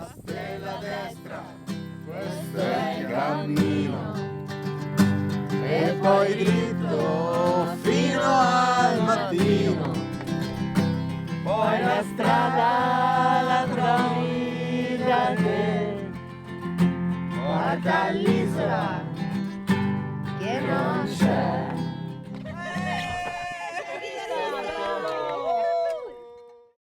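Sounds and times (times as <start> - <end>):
acoustic guitar: 0.0 - 23.6
person singing: 0.4 - 4.3, 5.6 - 10.2, 11.5 - 16.2, 20.4 - 23.2.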